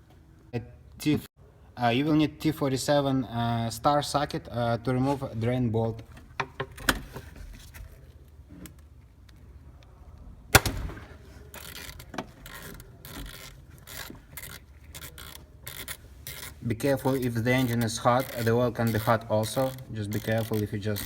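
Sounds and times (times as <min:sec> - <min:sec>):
sharp crack: 0:10.5 - 0:12.6
socket wrench clicking: 0:11.6 - 0:16.6, 0:17.5 - 0:21.0.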